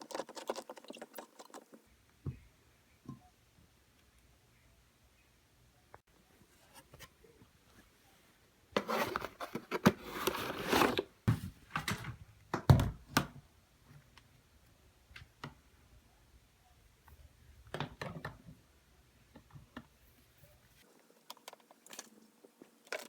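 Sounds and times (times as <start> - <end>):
rustling and scraping: 8.8 - 12.2.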